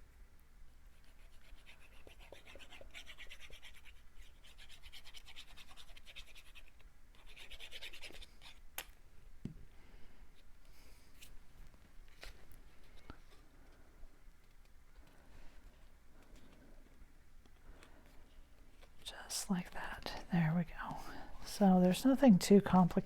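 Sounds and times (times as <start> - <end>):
scratchy rubbing on cardstock: 1.0 - 8.6.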